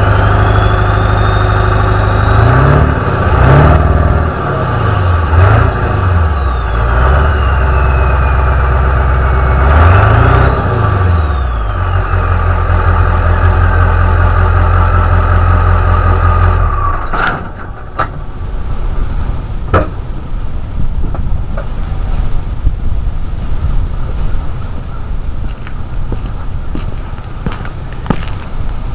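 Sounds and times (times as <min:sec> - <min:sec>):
turbocharger whistle: 0:00.0 - 0:14.0
diesel engine running: 0:00.0 - 0:28.9
steady noise: 0:10.6 - 0:28.9
scattered clicks and knocks: 0:19.7 - 0:20.0.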